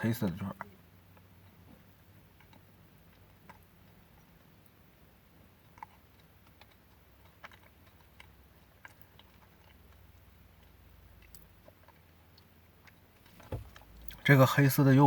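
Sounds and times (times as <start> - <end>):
person chewing: 5.5 - 14.2.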